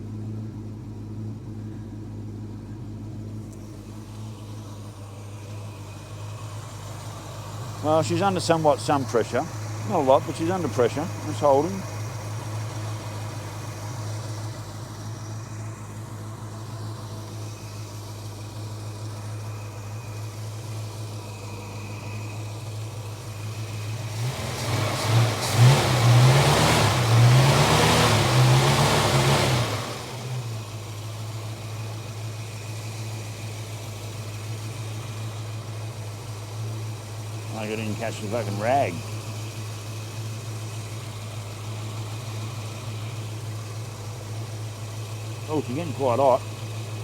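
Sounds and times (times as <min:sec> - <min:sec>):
car engine idling and revving: 0:00.0 - 0:47.0.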